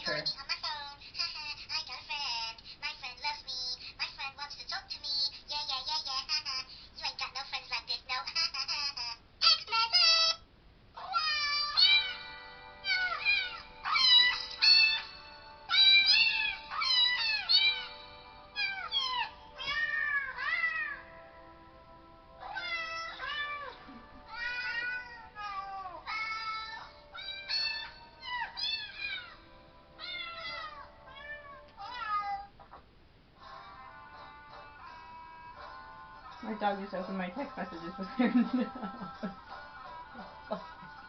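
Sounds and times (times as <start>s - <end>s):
cat meow ringtone: 11.2s - 21.1s, 22.4s - 23.8s, 24.4s - 32.4s.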